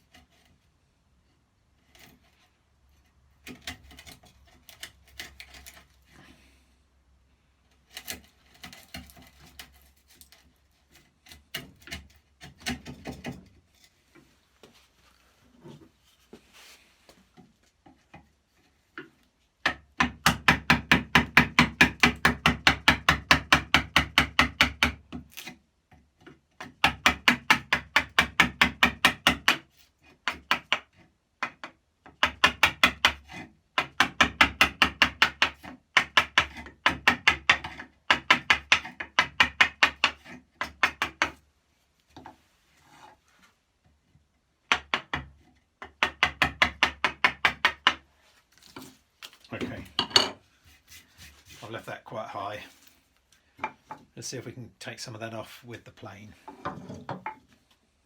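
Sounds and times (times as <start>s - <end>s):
chisel striking wood: 19.0s - 25.3s, 26.2s - 41.4s, 44.6s - 48.1s.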